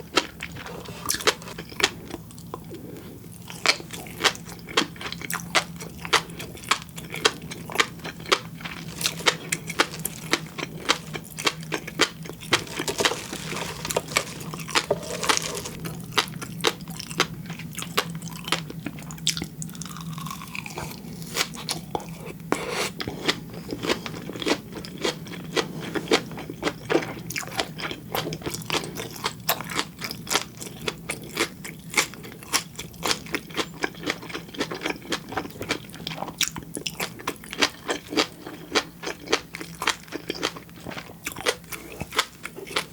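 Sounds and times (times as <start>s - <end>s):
chewing fish roe popping: 3.5s - 22.1s.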